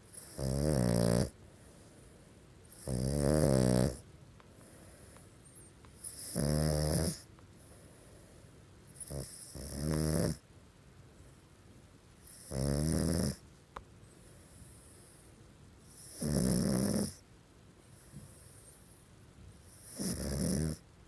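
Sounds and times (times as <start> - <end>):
dog snoring: 0.1 - 1.8, 2.7 - 4.0, 4.6 - 7.8, 8.9 - 10.4, 12.2 - 13.4, 14.4 - 17.2, 17.9 - 20.8.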